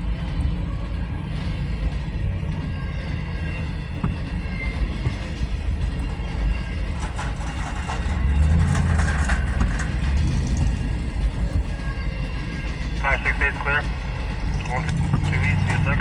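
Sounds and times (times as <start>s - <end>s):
freight train rolling past: 0.0s - 16.0s
knocks and rattles: 3.2s - 13.5s, 14.4s - 16.0s.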